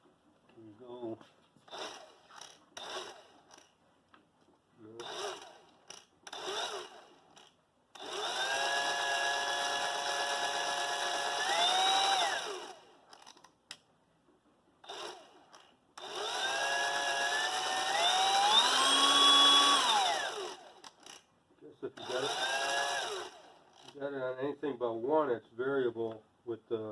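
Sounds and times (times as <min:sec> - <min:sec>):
band saw running: 0:08.0 - 0:12.8, 0:16.0 - 0:21.2, 0:22.0 - 0:24.0.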